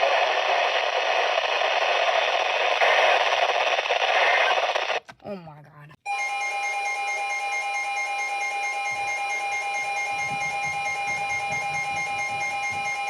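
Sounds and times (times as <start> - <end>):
electronic alarm tone: 6.1 - 13.0.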